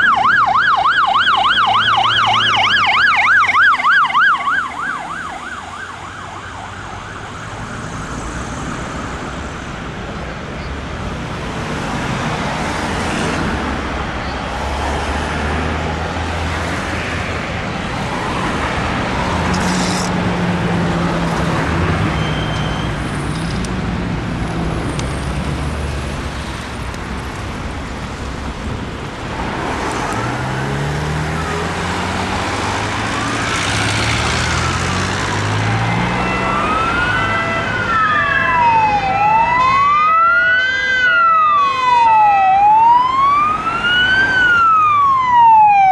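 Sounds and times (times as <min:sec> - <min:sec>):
emergency vehicle siren wailing: 0:00.0 - 0:10.1, 0:29.1 - 0:45.9.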